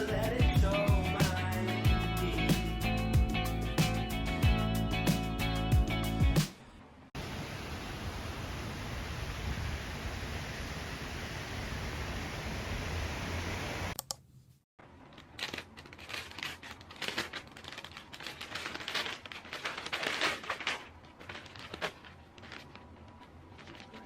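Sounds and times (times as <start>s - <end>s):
plastic packaging crinkling: 14.9s - 24.0s.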